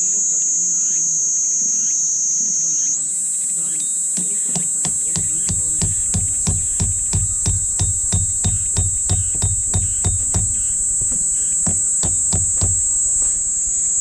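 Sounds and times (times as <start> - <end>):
insects buzzing: 0.0 - 14.0.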